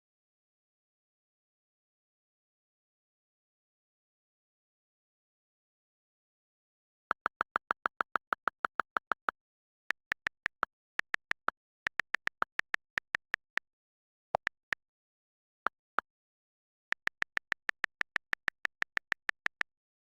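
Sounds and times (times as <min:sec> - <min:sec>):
electronic ticks: 0:07.1 - 0:13.7, 0:14.4 - 0:14.9, 0:16.9 - 0:19.8.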